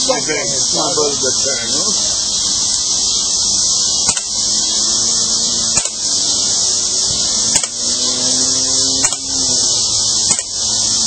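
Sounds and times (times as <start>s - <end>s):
steady high hiss: 0.0s - 11.0s
air pistol shots: 4.0s - 4.4s, 5.7s - 6.2s, 7.5s - 7.8s, 9.0s - 9.3s, 10.2s - 10.6s.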